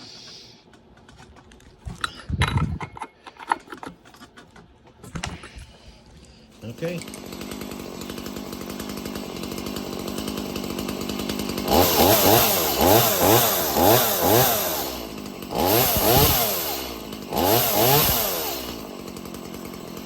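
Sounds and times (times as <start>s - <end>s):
chainsaw idling and revving: 6.6s - 20.0s.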